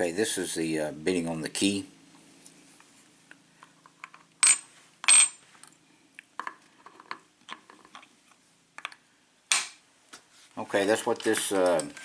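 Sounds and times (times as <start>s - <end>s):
metal lock parts clinking: 11.1s - 12.0s.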